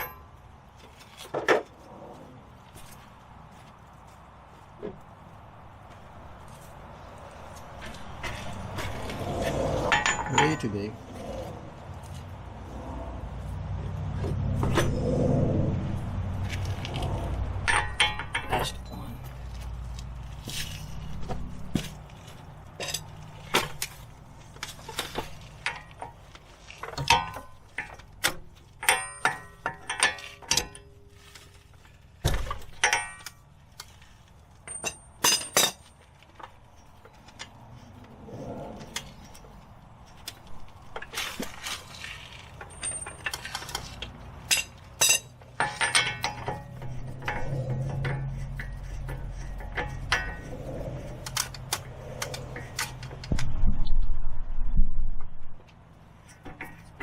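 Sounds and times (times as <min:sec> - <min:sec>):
metal tools clanking: 0:00.0 - 0:00.4, 0:07.8 - 0:11.5, 0:17.6 - 0:19.8, 0:20.5 - 0:34.0, 0:34.6 - 0:37.6, 0:38.6 - 0:53.3.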